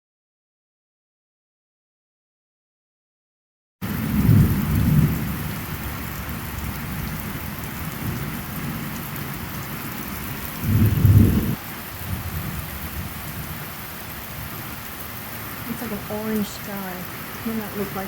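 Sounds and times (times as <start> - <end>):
heavy rain pouring: 3.8 - 18.0
thunder rumbling: 3.8 - 18.0.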